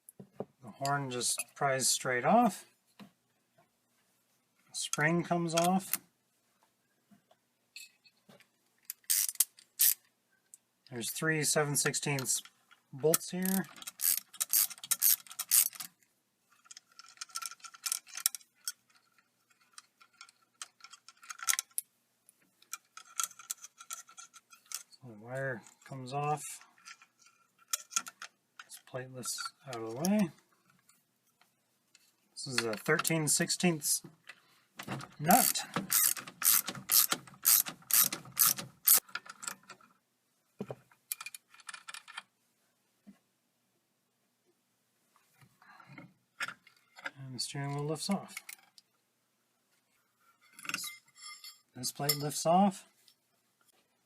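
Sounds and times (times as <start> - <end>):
ratchet wrench clicking: 8.9 - 10.0, 13.4 - 15.9, 35.4 - 39.0.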